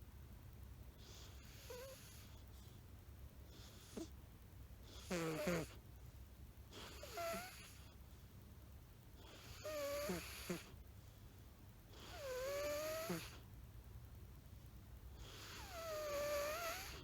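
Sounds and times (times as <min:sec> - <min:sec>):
cat snoring with whistling note: 0:01.0 - 0:02.4, 0:03.5 - 0:04.1, 0:04.9 - 0:05.8, 0:06.7 - 0:07.9, 0:09.2 - 0:10.8, 0:11.9 - 0:13.4, 0:15.2 - 0:17.0.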